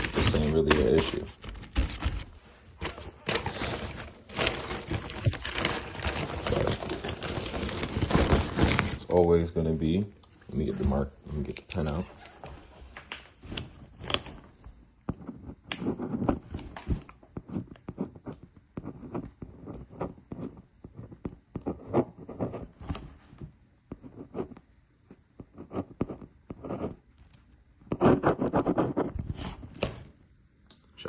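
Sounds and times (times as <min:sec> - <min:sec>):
hands handling packaging: 0:00.0 - 0:09.1.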